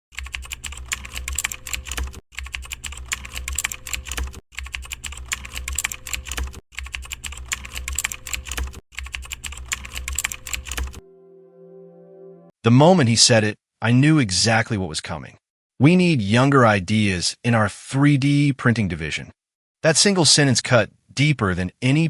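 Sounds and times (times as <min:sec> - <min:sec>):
computer keyboard typing: 0:00.1 - 0:11.0
faint sustained chord: 0:11.0 - 0:12.6.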